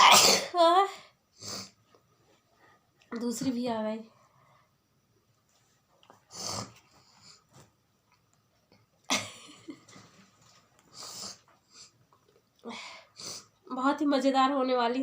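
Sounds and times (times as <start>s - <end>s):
woman sniffing through nose: 1.4s - 1.8s, 6.3s - 7.4s, 10.9s - 12.0s, 13.1s - 13.6s.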